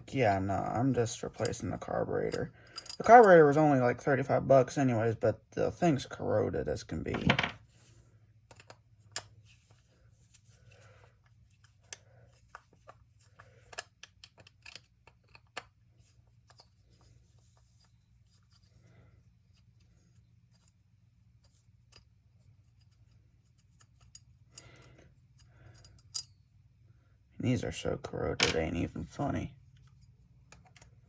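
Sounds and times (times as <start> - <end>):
low steady hum: 0.0 - 31.0
small metal parts clicking: 2.3 - 3.4, 12.8 - 15.7, 22.8 - 26.4.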